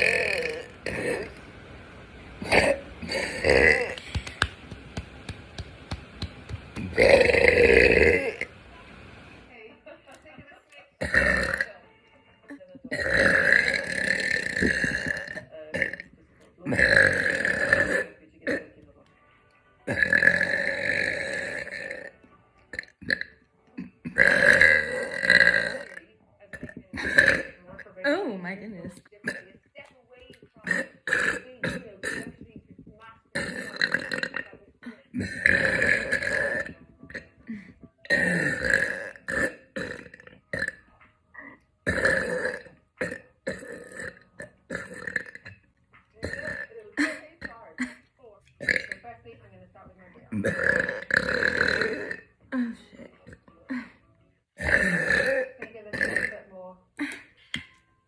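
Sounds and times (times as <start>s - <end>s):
woman burping loudly: 0.0s - 1.4s, 2.4s - 4.5s, 6.8s - 8.5s, 11.0s - 11.8s, 12.5s - 18.8s, 19.8s - 29.6s, 30.4s - 49.1s, 50.3s - 54.0s, 54.6s - 57.6s
gulping sounds: 0.0s - 1.6s, 2.4s - 8.6s, 11.0s - 11.8s, 12.9s - 18.8s, 19.8s - 49.1s, 50.2s - 54.0s, 54.6s - 57.7s.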